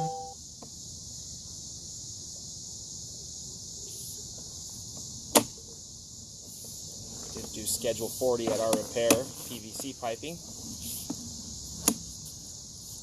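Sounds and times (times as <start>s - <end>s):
high-pitched hiss: 0.0s - 13.0s.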